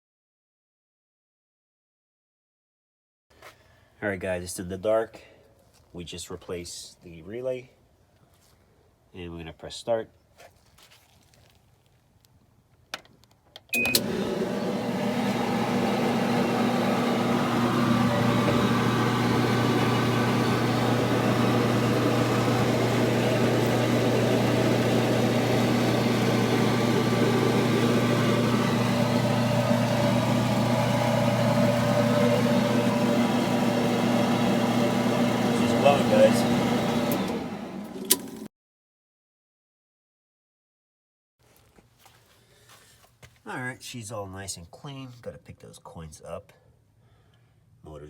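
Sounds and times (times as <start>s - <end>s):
clothes dryer running: 13.8s - 38.5s.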